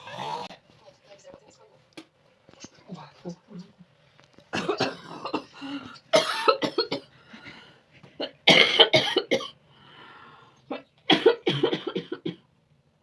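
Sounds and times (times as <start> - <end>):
person coughing: 4.5 - 7.1, 8.2 - 9.6, 10.7 - 12.4.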